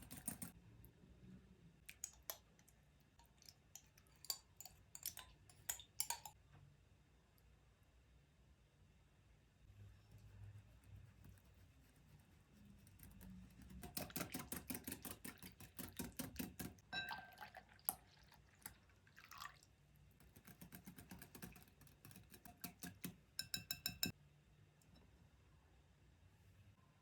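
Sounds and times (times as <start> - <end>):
utensil beating in a bowl: 0.0 - 0.6, 1.9 - 6.4, 10.8 - 18.0, 20.2 - 24.2.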